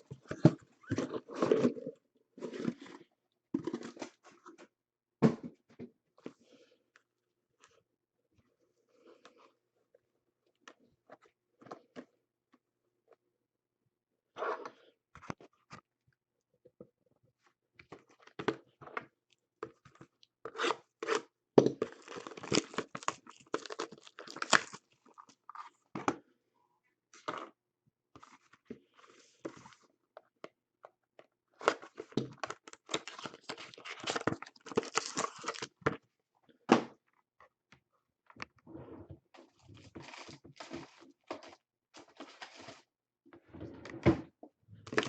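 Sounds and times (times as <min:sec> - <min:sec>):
wrappers ripping and crinkling: 0:22.0 - 0:24.8, 0:32.6 - 0:35.7.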